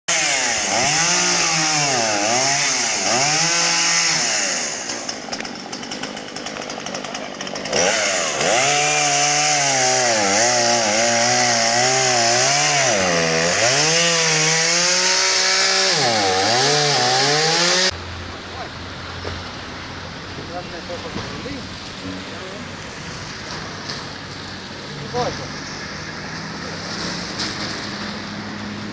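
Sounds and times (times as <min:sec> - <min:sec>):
chainsaw cutting at high revs: 0:00.1 - 0:18.0.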